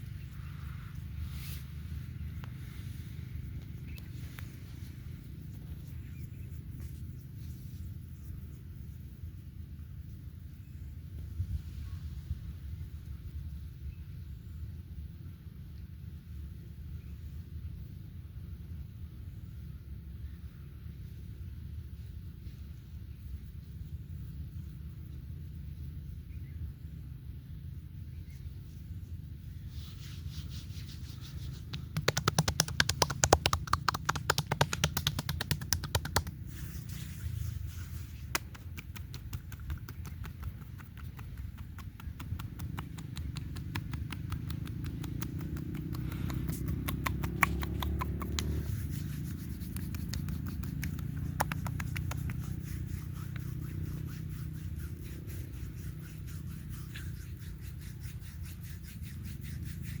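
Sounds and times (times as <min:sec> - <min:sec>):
hands rubbing oiled skin: 0:00.3 - 0:09.1, 0:29.7 - 1:00.0
hands tapping on skin: 0:31.4 - 0:36.7, 0:38.1 - 0:59.9
small clicks: 0:38.2 - 0:52.7.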